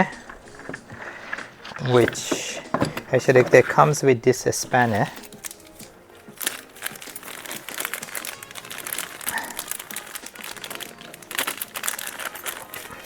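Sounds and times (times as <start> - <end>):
crinkling and rustling: 0.0 - 13.0
small irregular clicks: 5.2 - 13.0.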